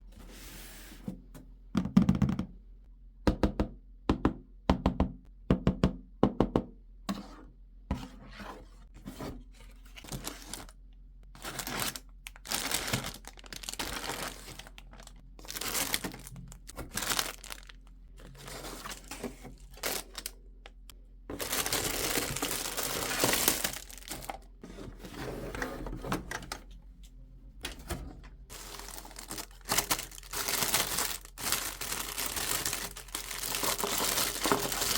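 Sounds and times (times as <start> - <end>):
plastic wrap crinkling and tearing: 10.0 - 24.5, 28.5 - 34.9
packaging clicks and knocks: 21.3 - 24.4, 27.6 - 34.9.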